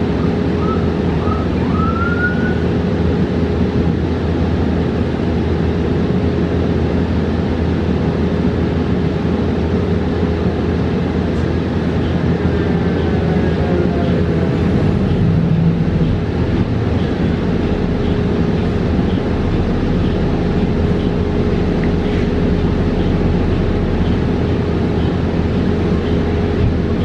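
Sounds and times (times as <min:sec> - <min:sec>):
bus road and tyre rumble: 0:00.0 - 0:27.0
level electric hum: 0:09.5 - 0:27.0.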